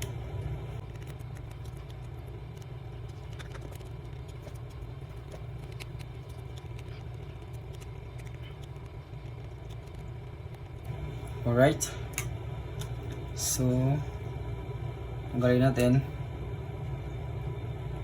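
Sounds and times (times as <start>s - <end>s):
low background hum: 0.0s - 18.0s.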